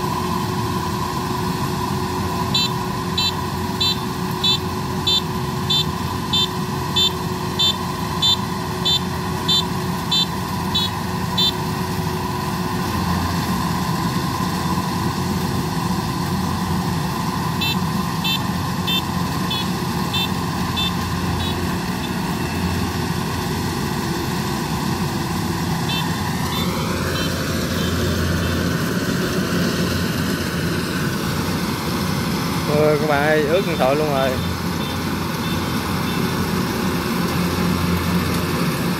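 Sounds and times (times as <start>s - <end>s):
diesel engine running under load: 0.0s - 38.9s
electronic beeps: 2.5s - 11.6s, 17.6s - 22.2s, 25.9s - 28.6s.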